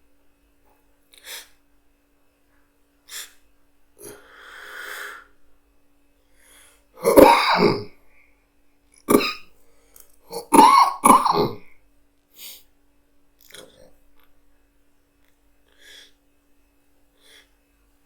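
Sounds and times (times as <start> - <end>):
person sniffing: 1.2 - 1.6, 3.1 - 3.4, 4.0 - 5.4, 12.4 - 12.7, 15.7 - 16.2, 17.2 - 17.5
long drawn breath: 4.0 - 5.4, 6.2 - 7.0, 17.2 - 17.6
person sneezing loudly: 7.0 - 7.9, 9.1 - 9.5, 10.3 - 11.7.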